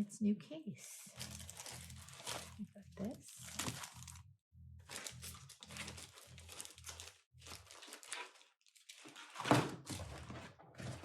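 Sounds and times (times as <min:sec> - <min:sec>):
paper crinkling and rustling: 0:01.1 - 0:02.6, 0:03.3 - 0:04.2, 0:04.9 - 0:11.0
bass guitar in another room: 0:01.2 - 0:07.7.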